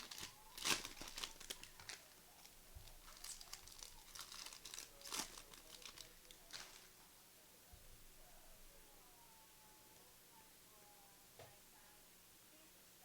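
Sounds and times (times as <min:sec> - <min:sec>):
foil wrappers tearing and crinkling: 0:00.0 - 0:06.9.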